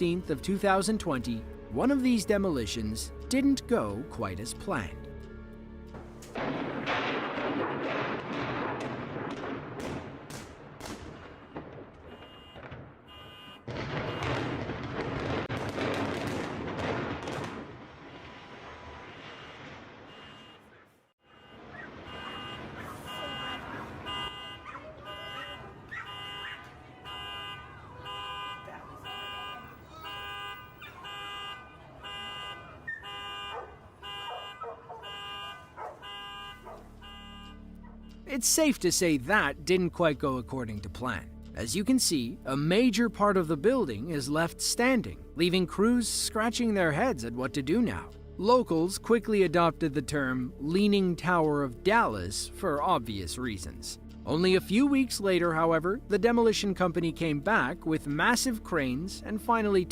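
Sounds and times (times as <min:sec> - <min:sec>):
car alarm pulsing: 0:11.3 - 0:14.4, 0:19.4 - 0:37.7
dog barking: 0:21.7 - 0:22.0, 0:22.7 - 0:26.8, 0:28.5 - 0:29.6, 0:32.8 - 0:37.0.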